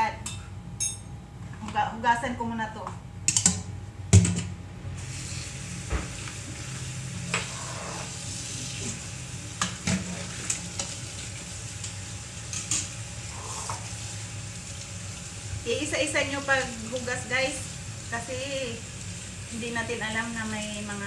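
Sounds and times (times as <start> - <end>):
lettuce leaves being washed: 13.4 - 21.0.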